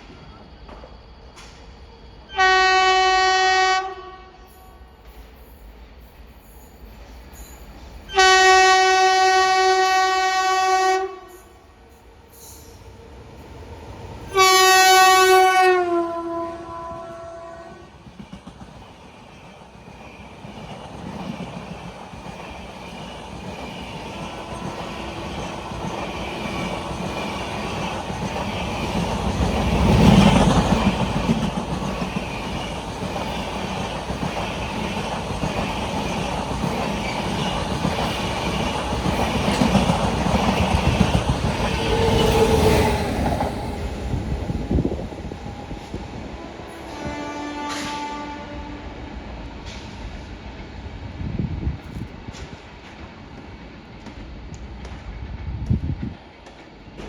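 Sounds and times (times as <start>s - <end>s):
train wheel noise and clatter: 0.0s - 57.0s
train horn blasts: 2.3s - 4.8s, 8.1s - 11.6s, 14.3s - 17.9s, 46.3s - 49.1s.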